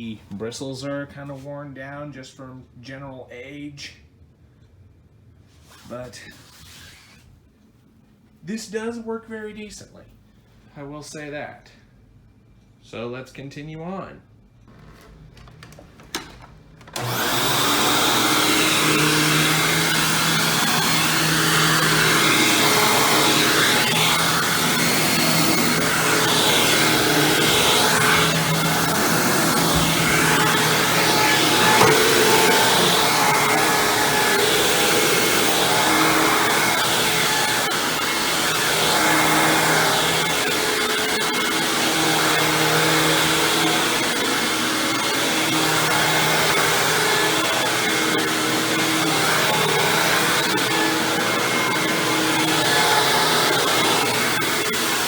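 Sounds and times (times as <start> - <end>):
upright vacuum running on carpet: 17.0 - 55.0.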